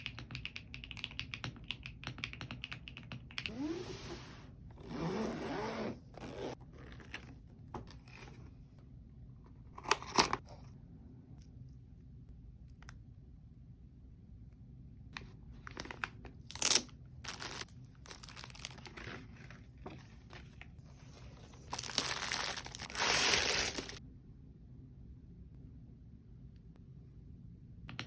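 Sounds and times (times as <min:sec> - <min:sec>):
packaging crinkling and rustling: 0:15.6 - 0:24.0.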